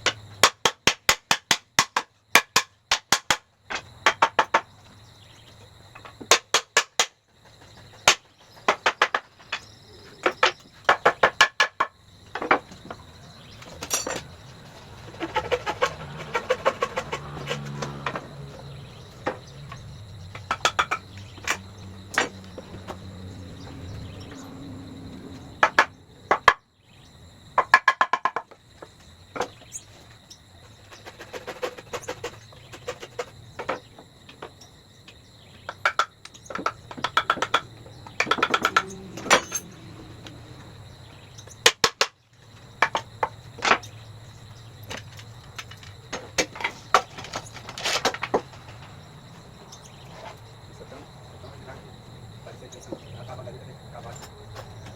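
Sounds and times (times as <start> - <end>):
sharp knocks and taps on wood: 0.0 - 13.0, 19.1 - 23.1, 25.6 - 26.6, 27.5 - 29.7, 31.0 - 39.4, 41.6 - 42.2, 42.8 - 43.9.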